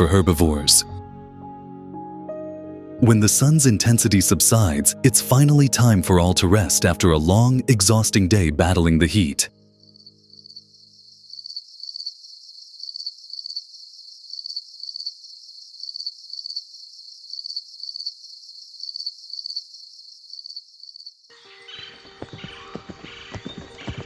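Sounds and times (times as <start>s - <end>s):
crickets chirping: 9.8s - 24.0s.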